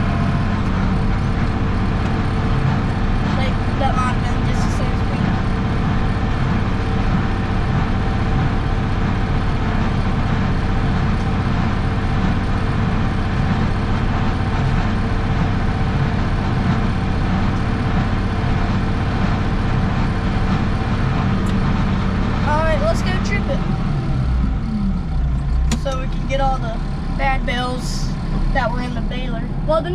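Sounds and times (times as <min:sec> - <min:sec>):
diesel tractor engine running: 0:00.0 - 0:29.9.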